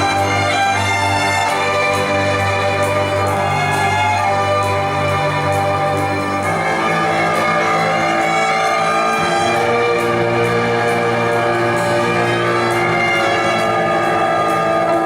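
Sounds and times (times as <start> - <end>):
orchestra playing sustained chords: 0.0 - 15.0.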